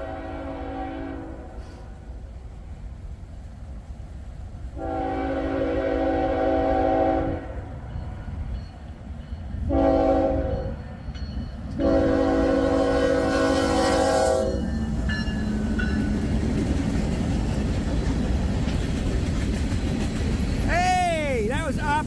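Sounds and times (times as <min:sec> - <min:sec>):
locomotive air horn: 0:00.0 - 0:02.0, 0:04.8 - 0:07.8, 0:09.7 - 0:10.8, 0:11.8 - 0:14.6
train wheels rumbling on rails: 0:00.0 - 0:22.0.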